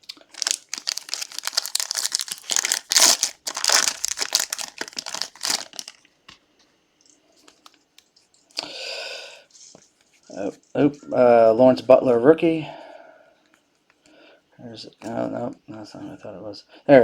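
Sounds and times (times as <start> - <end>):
plastic wrapper tearing and crinkling: 0.0 - 6.1.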